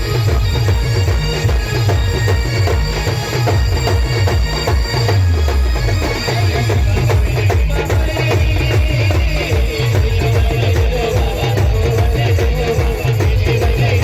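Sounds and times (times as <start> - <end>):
reed wind instrument melody: 0.0 - 7.0
heavy drum beats: 0.0 - 14.0.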